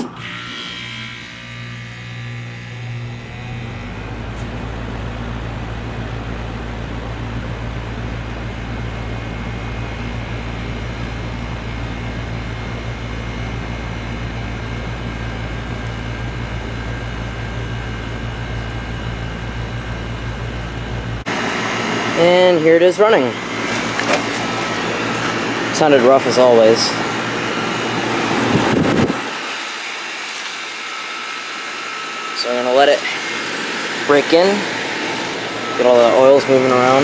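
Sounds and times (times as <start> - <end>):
air conditioner compressor hum: 2.9 - 37.0
condenser fan rush: 21.2 - 37.0.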